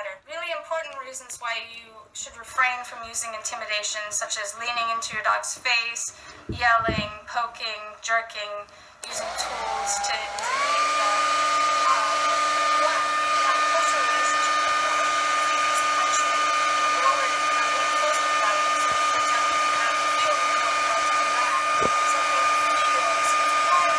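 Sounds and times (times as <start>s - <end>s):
hair dryer running: 9.0s - 23.9s.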